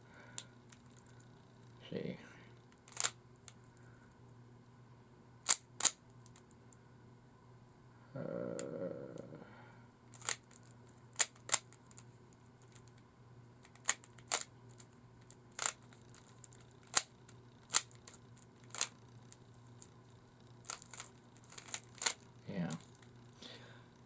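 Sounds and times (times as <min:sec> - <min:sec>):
puzzle cube clicking: 0:02.8 - 0:03.2, 0:05.5 - 0:06.5, 0:10.1 - 0:12.0, 0:13.6 - 0:23.2.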